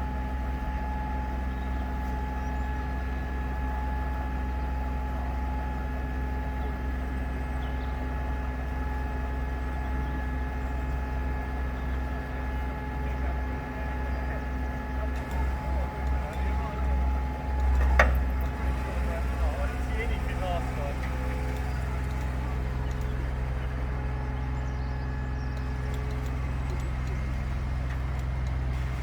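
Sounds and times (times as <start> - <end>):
engine rumbling with whine: 0.0 - 29.0.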